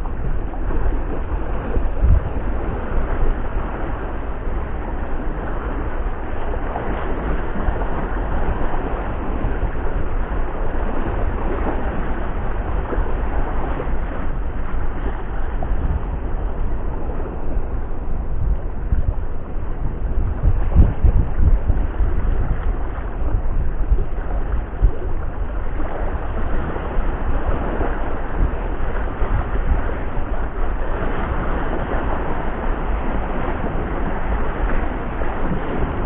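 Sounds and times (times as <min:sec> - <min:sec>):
wind buffeting microphone: 0:00.0 - 0:36.0.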